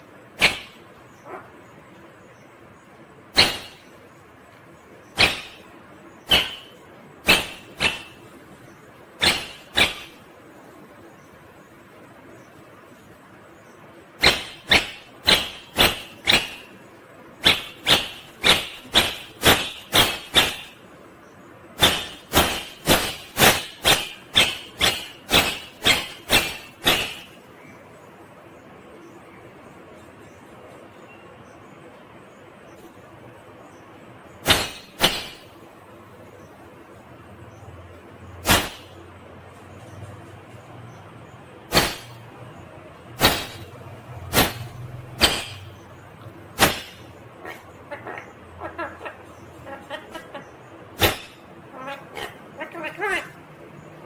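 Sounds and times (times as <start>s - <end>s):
steady low hum: 0.0s - 54.0s
parrot harsh calls: 5.2s - 8.3s, 21.8s - 27.4s, 46.6s - 53.5s.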